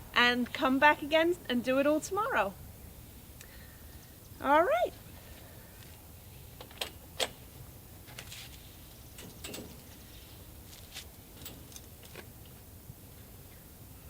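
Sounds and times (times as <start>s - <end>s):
coop doors clicking and knocking: 9.2s - 9.9s.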